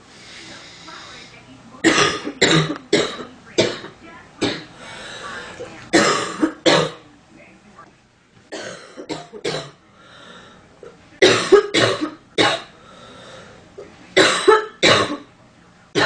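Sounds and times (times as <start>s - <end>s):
woman coughing: 1.8s - 4.7s, 5.9s - 7.0s, 8.5s - 9.8s, 11.2s - 12.7s, 14.2s - 15.3s.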